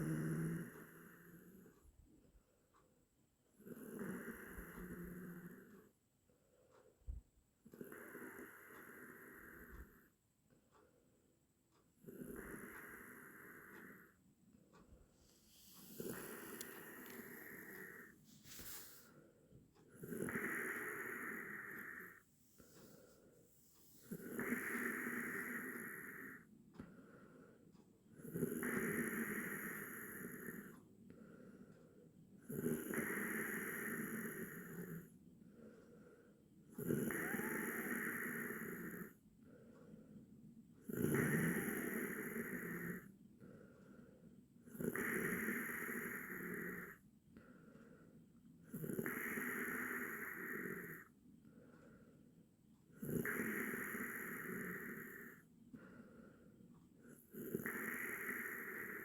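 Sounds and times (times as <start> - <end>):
person snoring: 0.0 - 1.8, 3.6 - 5.8, 7.8 - 10.0, 12.0 - 14.1, 15.4 - 19.1, 20.0 - 23.2, 23.9 - 26.4, 28.2 - 30.8, 32.4 - 35.1, 36.7 - 39.2, 40.8 - 43.1, 44.7 - 47.0, 48.7 - 51.1, 53.0 - 56.2, 57.1 - 59.0.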